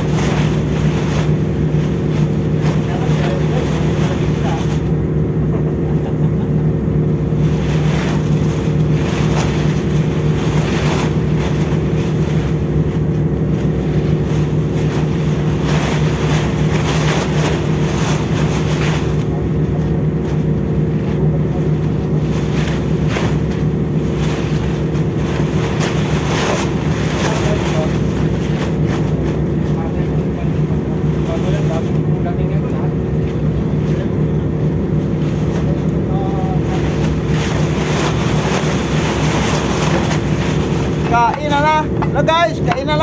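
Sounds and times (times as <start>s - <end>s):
ship engine drone: 0.0s - 43.0s.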